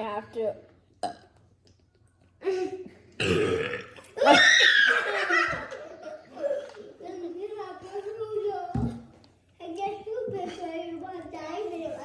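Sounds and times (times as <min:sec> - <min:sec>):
person burping: 0:01.0 - 0:01.3, 0:03.2 - 0:04.2.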